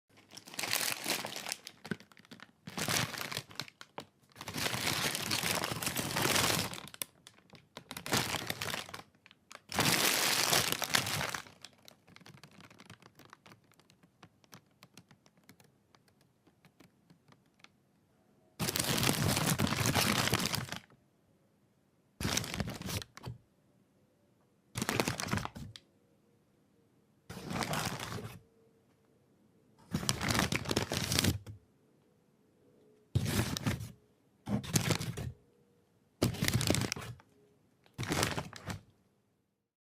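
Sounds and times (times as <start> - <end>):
paper bag crumpling: 0.1 - 13.9, 18.6 - 20.9, 22.2 - 23.3, 24.8 - 25.7, 27.3 - 28.4, 29.9 - 31.4, 33.2 - 33.9, 36.2 - 37.2, 38.0 - 38.8.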